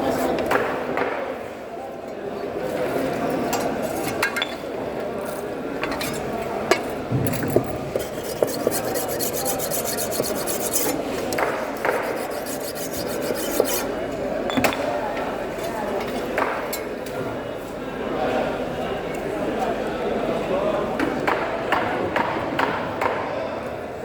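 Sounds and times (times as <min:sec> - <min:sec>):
knife scraping fish: 0:07.6 - 0:13.9.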